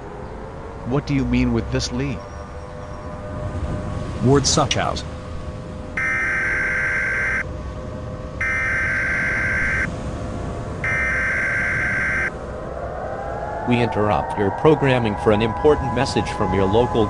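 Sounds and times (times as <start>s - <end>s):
buzzing digital data tones: 6.0s - 7.4s, 8.4s - 9.9s, 10.8s - 12.3s.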